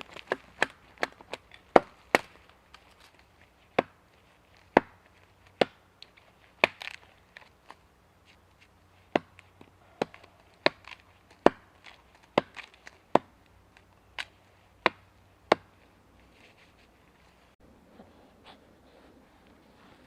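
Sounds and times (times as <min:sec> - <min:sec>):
wood being chopped: 0:00.0 - 0:02.8, 0:03.7 - 0:04.0, 0:04.6 - 0:07.0, 0:09.1 - 0:15.8.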